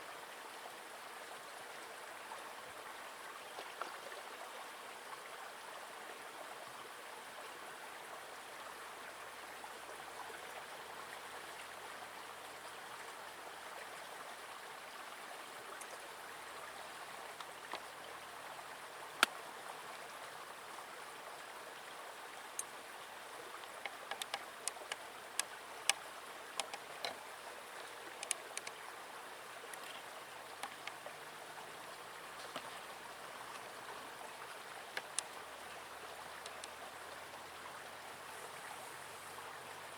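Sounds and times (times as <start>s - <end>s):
stream water rushing: 0.0s - 39.9s
sharp clicks and taps: 23.9s - 25.0s, 26.6s - 27.2s.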